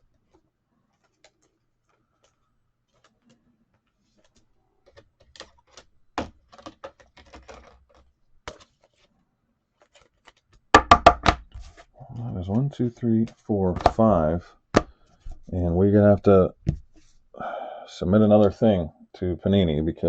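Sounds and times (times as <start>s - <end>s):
cards clicking and tapping: 0.2s - 9.1s, 9.8s - 15.5s.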